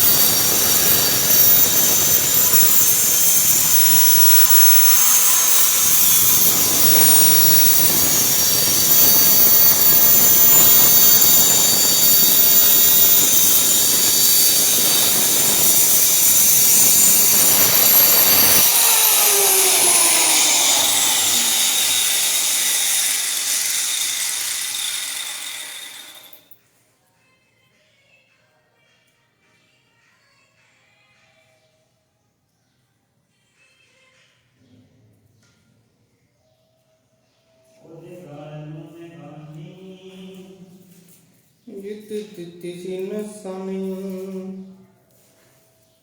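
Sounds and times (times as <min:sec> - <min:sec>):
power tool motor whining: 0:00.0 - 0:26.6.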